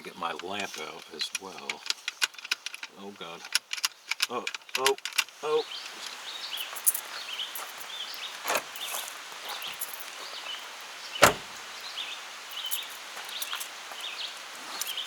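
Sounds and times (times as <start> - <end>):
vehicle door shutting: 8.4 - 8.8, 11.2 - 11.6
light clunk: 8.5 - 8.8, 11.2 - 11.6.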